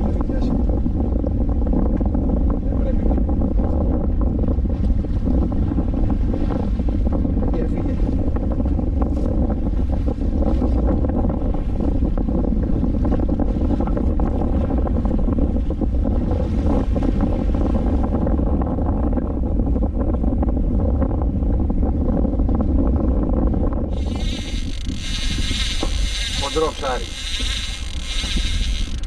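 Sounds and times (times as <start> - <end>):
wind rumble on microphone: 0.0 - 29.0
fishing reel drag buzzing: 23.9 - 29.0.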